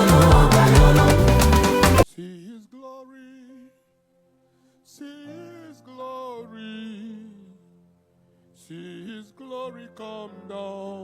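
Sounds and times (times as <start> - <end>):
person singing worship song: 0.0 - 3.7.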